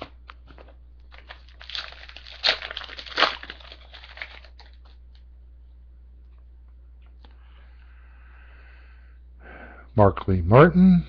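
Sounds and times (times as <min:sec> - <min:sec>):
foil wrapper tearing and crinkling: 0:01.1 - 0:05.0.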